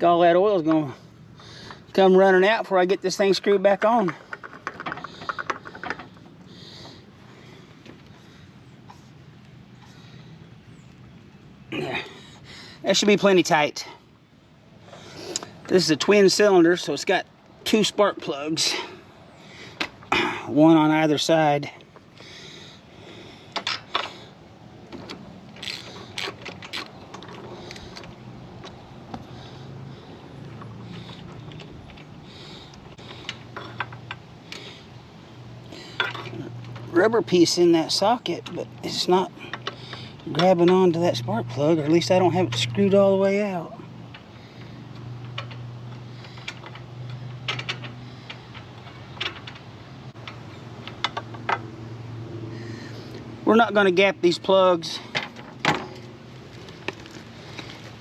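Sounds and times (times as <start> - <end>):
ratchet clicking: 25.6 - 27.0.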